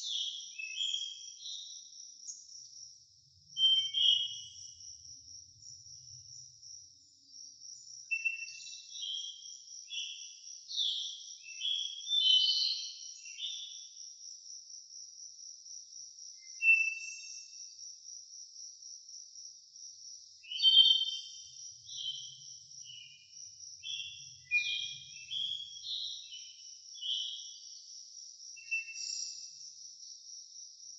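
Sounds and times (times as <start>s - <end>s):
high-pitched insect trill: 0.0s - 30.9s
songbird whistling: 3.6s - 4.3s.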